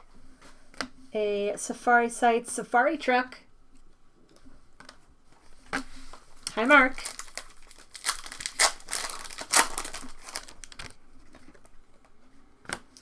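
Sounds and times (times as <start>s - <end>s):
foil wrapper crinkling and tearing: 6.4s - 11.8s.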